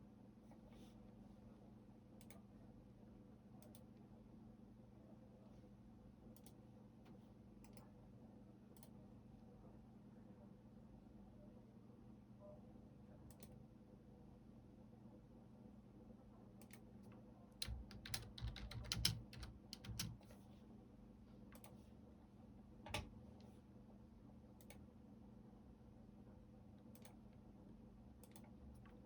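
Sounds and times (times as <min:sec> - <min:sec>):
computer keyboard typing: 0:17.6 - 0:20.3.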